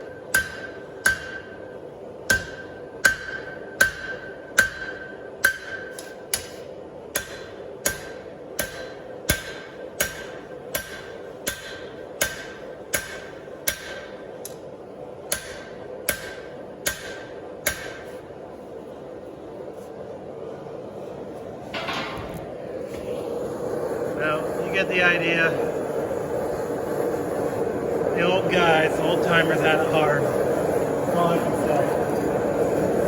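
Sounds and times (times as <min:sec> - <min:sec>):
hammer striking steel on anvil: 0:00.0 - 0:14.6, 0:15.3 - 0:18.2, 0:21.8 - 0:22.4
steady hum: 0:00.0 - 0:33.0.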